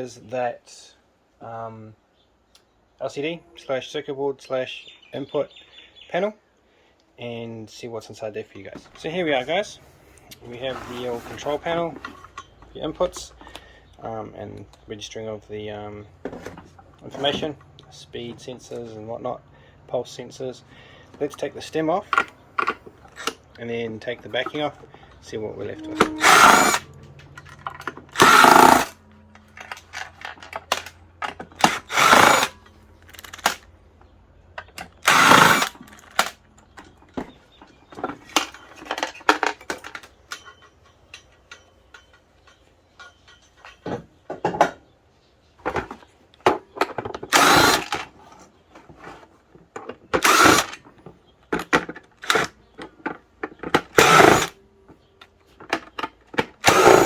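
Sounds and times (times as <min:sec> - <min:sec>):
power drill backing out screws: 0:10.6 - 0:12.5, 0:26.1 - 0:26.8, 0:27.4 - 0:32.6, 0:34.7 - 0:36.3, 0:47.1 - 0:48.1, 0:50.0 - 0:50.9, 0:52.2 - 0:52.5, 0:53.8 - 0:54.6, 0:56.5 - 0:57.0
plastic parts clicking and rattling: 0:26.3 - 0:33.7, 0:34.6 - 0:44.0, 0:45.6 - 0:54.5.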